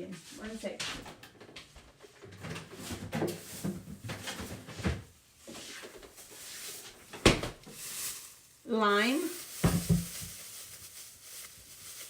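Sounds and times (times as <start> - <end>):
knocks and bumps in kitchen: 0.8 - 5.2, 7.0 - 7.8, 9.6 - 10.4.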